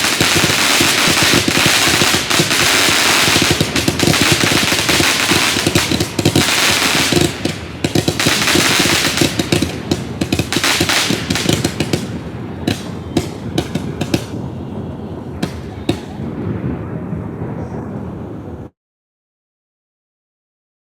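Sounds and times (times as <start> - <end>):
firework hissing spray: 0.0 - 14.4
ground firework crackling and popping: 0.0 - 16.4.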